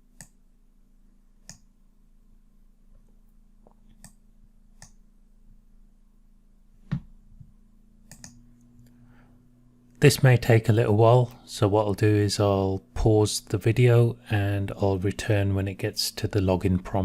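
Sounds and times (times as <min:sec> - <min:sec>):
faint low hum: 0:00.0 - 0:17.0
computer mouse clicks: 0:00.1 - 0:00.4, 0:01.4 - 0:01.7, 0:03.9 - 0:04.2, 0:04.8 - 0:05.0, 0:08.0 - 0:08.4.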